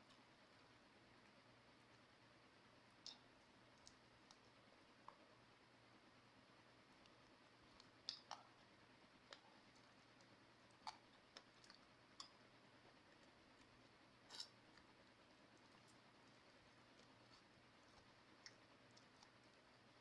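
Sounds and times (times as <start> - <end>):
eating clicks and smacks: 2.9 - 5.2, 7.0 - 20.0.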